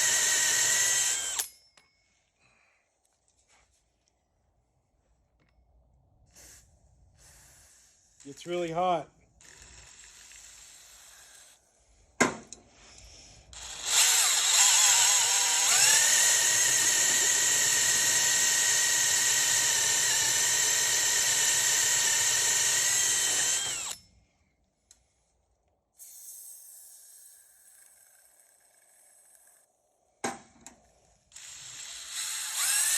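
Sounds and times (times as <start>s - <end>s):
drill click: 0.0s - 1.5s, 12.5s - 24.0s, 31.3s - 32.9s
drill motor whine: 0.0s - 1.5s, 13.5s - 24.0s, 31.3s - 32.9s.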